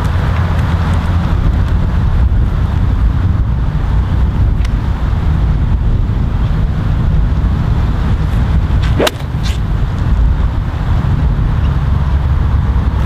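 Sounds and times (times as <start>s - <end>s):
wind buffeting microphone: 0.0s - 13.0s
golf club striking ball: 8.8s - 9.7s
golf club swing swish: 8.8s - 9.8s.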